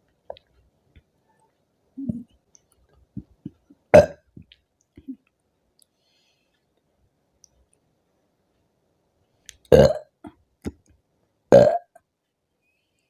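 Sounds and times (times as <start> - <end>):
woman burping loudly: 3.9 - 4.3, 9.7 - 10.1, 11.5 - 12.0.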